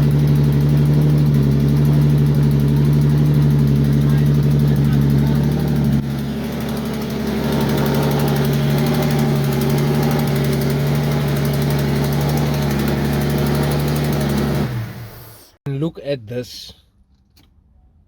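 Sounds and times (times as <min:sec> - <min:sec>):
car engine idling: 0:00.0 - 0:15.6.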